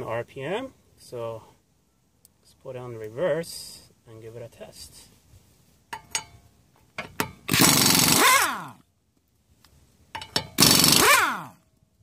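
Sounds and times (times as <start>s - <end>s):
pneumatic impact wrench burst: 7.5s - 8.8s, 10.4s - 11.6s
motor winding down whine: 10.6s - 11.5s.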